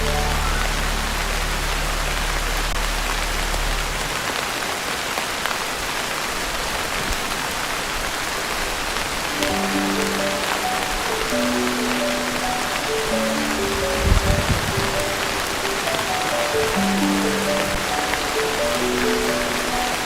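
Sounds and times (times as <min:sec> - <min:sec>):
low steady drone: 0:00.0 - 0:04.6
heavy rain on a tin roof: 0:00.0 - 0:20.0.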